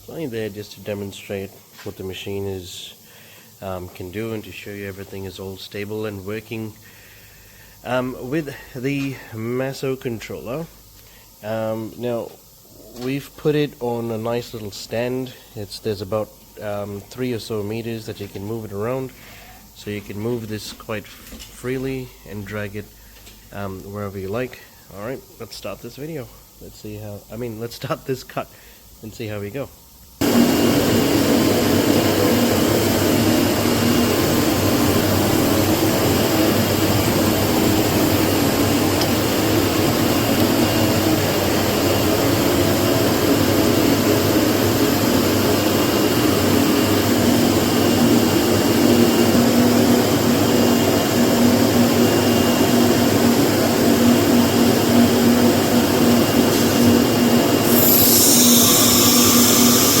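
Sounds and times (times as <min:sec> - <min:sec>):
cnc router humming: 0:30.2 - 1:00.0
hissy cutting noise: 0:51.3 - 1:00.0.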